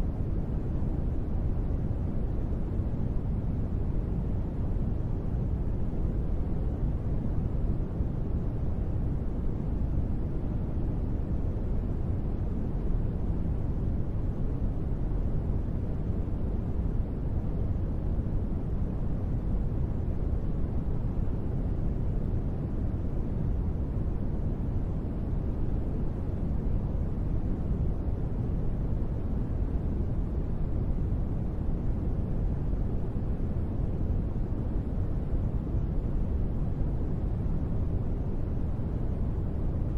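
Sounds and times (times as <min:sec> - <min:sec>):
deep rumbling white noise: 0:00.0 - 0:39.9.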